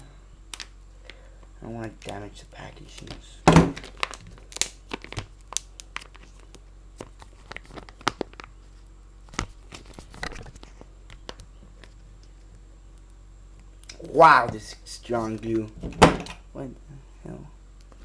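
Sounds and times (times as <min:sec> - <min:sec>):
packaging crinkling and tearing: 0:02.9 - 0:12.0.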